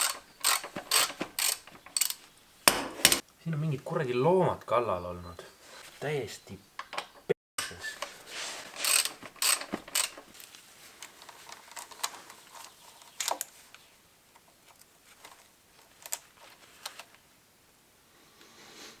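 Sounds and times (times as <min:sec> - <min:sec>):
parts being handled clicking: 0:00.0 - 0:03.2, 0:08.8 - 0:13.5.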